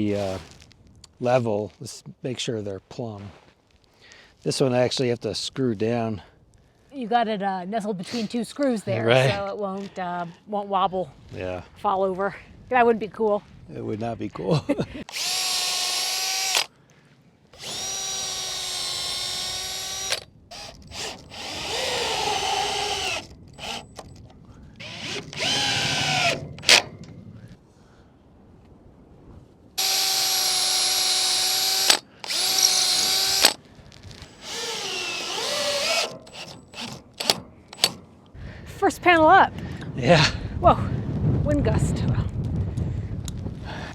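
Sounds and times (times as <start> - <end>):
power drill whining: 15.1 - 16.7, 17.6 - 24.1, 24.8 - 26.8, 29.8 - 33.6, 34.2 - 38.0.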